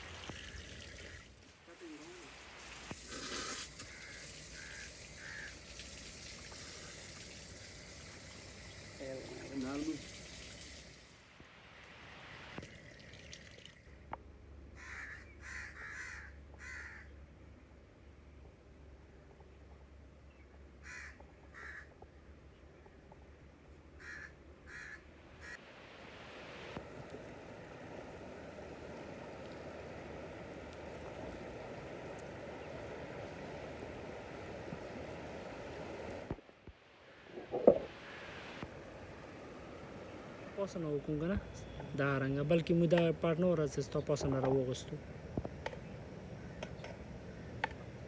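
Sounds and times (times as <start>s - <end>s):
river water flowing: 0.0s - 11.2s, 26.8s - 36.4s, 37.7s - 48.0s
bird calls: 3.8s - 5.7s
crow cawing: 3.8s - 5.8s, 14.8s - 17.1s, 20.8s - 21.9s, 24.0s - 25.6s.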